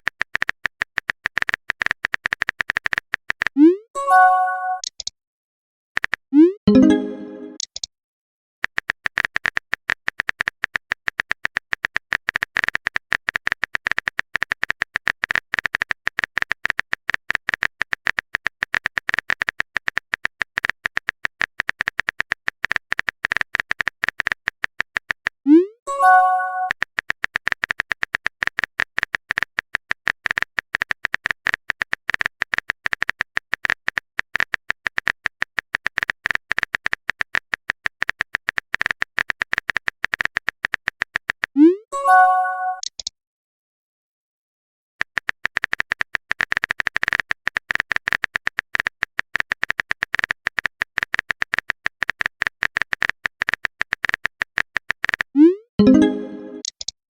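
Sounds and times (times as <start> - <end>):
phone keyboard typing clicks: 0.0 - 5.1, 6.0 - 7.9, 8.6 - 25.4, 26.1 - 41.6, 42.8 - 43.1, 45.0 - 57.0
message notification pop and chime: 3.7 - 4.9, 6.7 - 7.6, 25.9 - 26.7, 42.0 - 43.0, 55.8 - 56.7.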